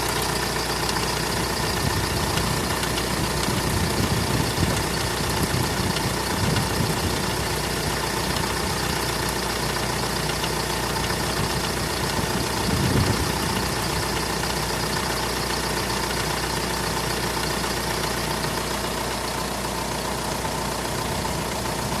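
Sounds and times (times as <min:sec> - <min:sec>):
engine idling with steady knock: 0:00.0 - 0:22.0.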